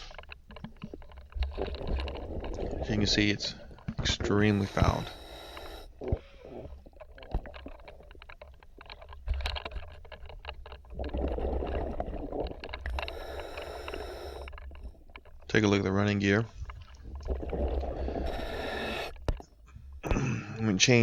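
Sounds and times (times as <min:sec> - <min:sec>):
small clicks and knocks: 0:00.0 - 0:02.2, 0:07.1 - 0:10.9
exhaled bubbles rumbling underwater: 0:00.6 - 0:15.6, 0:16.5 - 0:19.6
hissing inhale on regulator: 0:04.2 - 0:06.8, 0:12.8 - 0:15.0, 0:17.6 - 0:19.4.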